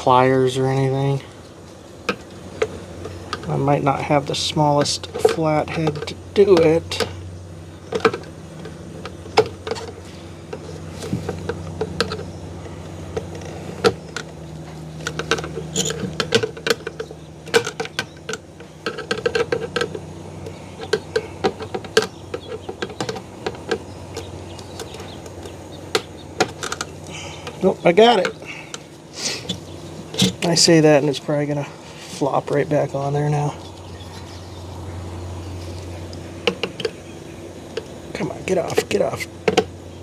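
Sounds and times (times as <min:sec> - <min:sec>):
steady low hum: 0:00.0 - 0:40.0
light metallic clicks and scrapes: 0:02.1 - 0:07.2, 0:07.8 - 0:30.7.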